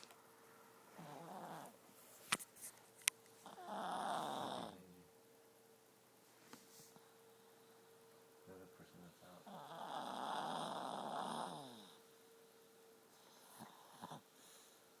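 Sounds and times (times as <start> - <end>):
dog snoring: 1.0 - 1.8, 3.4 - 4.9, 9.0 - 12.0, 13.2 - 14.8.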